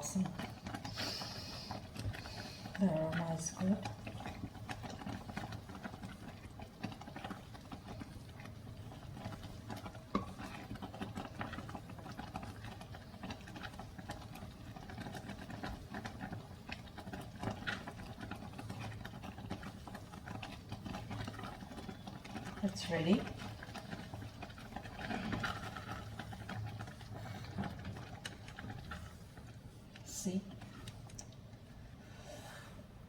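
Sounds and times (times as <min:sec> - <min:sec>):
milk pudding simmering: 0:00.0 - 0:33.0.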